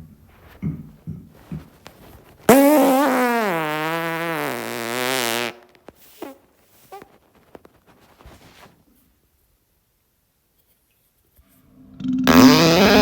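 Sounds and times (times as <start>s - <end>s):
faint clicks and rustles: 0.3s - 2.5s, 5.6s - 9.2s
long fart: 0.6s - 7.2s, 12.2s - 13.0s.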